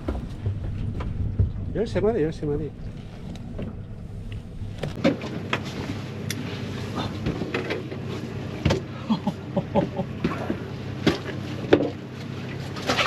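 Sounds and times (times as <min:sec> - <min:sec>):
boat engine running: 0:00.0 - 0:06.9.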